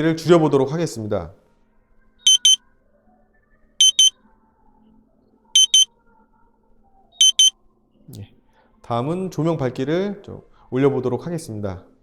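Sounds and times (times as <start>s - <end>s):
electronic double beeps: 2.3s - 2.6s, 3.8s - 4.2s, 5.6s - 5.9s, 7.2s - 7.5s.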